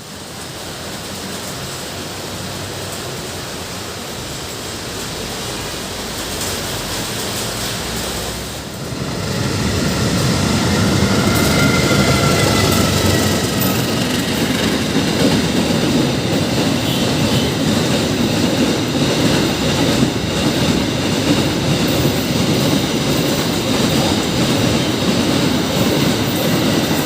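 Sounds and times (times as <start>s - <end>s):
train rumbling into station: 0.0s - 27.0s
faint high squeal: 9.9s - 14.0s.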